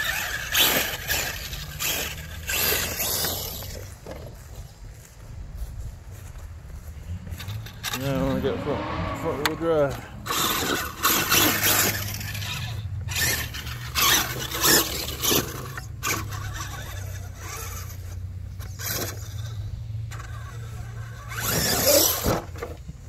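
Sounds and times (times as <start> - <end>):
rc truck tyres scrabbling on ground: 0.0 - 9.2, 9.9 - 23.0.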